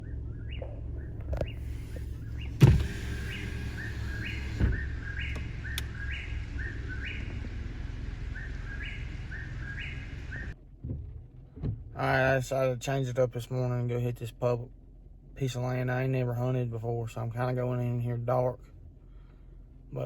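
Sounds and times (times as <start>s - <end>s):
steady low rumble: 0.0s - 20.0s
loud thump: 2.5s - 4.8s.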